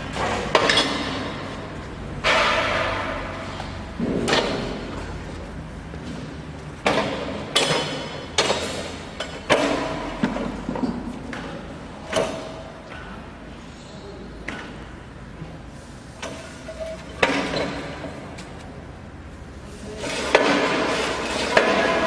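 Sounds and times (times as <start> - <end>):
sharp metallic knocks and clanks: 0.0 - 5.2, 6.0 - 13.2, 16.2 - 18.4, 20.1 - 22.0.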